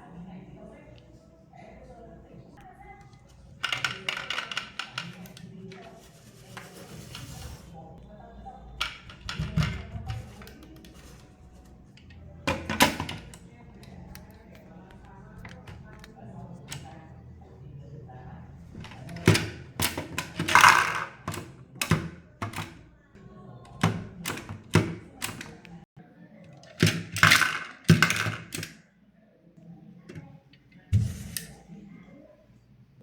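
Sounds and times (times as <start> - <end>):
plastic toys clicking and knocking: 3.0 - 7.4, 8.8 - 16.9, 18.7 - 22.9, 23.7 - 25.8, 26.4 - 28.8.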